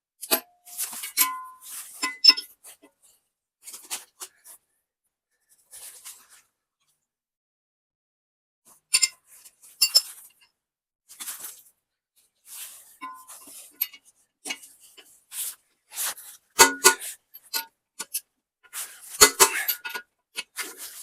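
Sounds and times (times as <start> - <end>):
hand tools clinking on metal: 16.6 - 18.2, 19.2 - 20.6.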